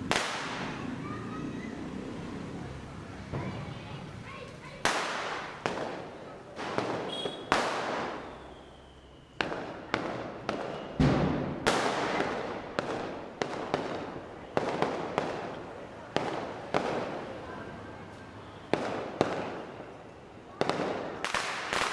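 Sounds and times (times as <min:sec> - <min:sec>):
deep firecracker bang: 0:00.0 - 0:01.4, 0:03.3 - 0:04.1, 0:09.5 - 0:15.6
firecrackers banging: 0:00.0 - 0:21.9
faint falling whistle: 0:07.1 - 0:07.5, 0:08.2 - 0:09.4.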